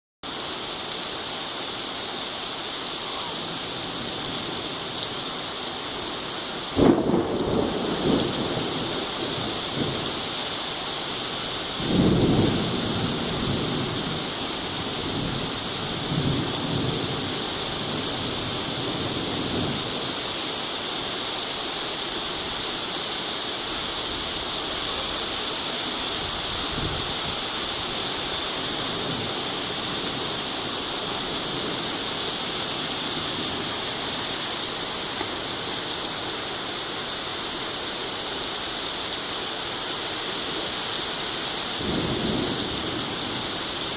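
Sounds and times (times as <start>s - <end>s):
steady rain falling: 0.2s - 43.9s
thunder clap and rumble: 6.8s - 10.1s, 11.8s - 14.3s, 41.8s - 43.9s.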